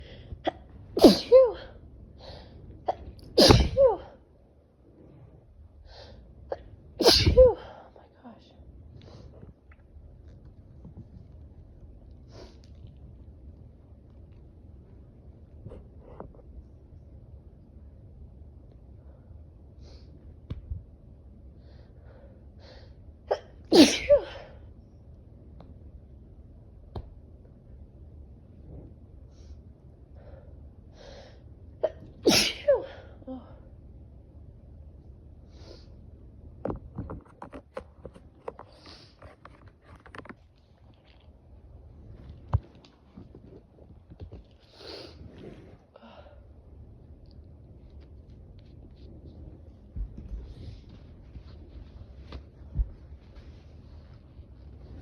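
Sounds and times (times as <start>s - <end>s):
woman sneezing: 0.5s - 1.7s, 2.9s - 4.2s, 7.0s - 7.8s, 23.3s - 24.5s, 31.9s - 33.0s.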